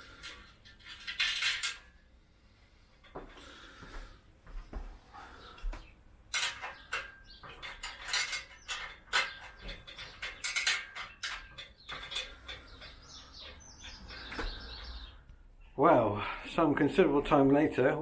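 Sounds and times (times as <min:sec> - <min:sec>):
metallic clinks and clanks: 0:00.0 - 0:02.0, 0:06.3 - 0:15.0.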